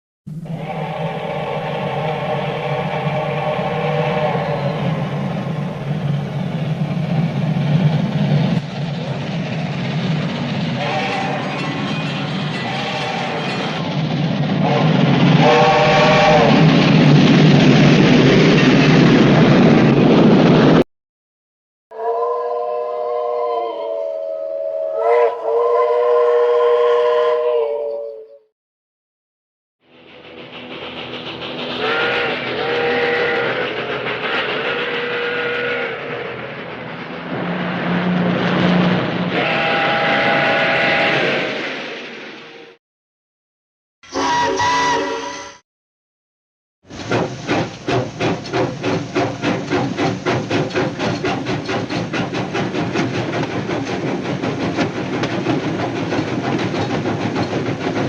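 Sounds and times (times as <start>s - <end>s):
train whistle blast: 0.3s - 5.2s, 10.8s - 13.8s, 14.6s - 16.7s, 21.9s - 28.5s, 31.8s - 36.2s, 39.3s - 41.6s, 44.0s - 45.6s
steam train running: 0.3s - 20.8s, 22.0s - 28.2s, 29.8s - 42.8s, 44.0s - 45.6s, 46.8s - 58.0s
steady rushing noise: 29.9s - 39.4s.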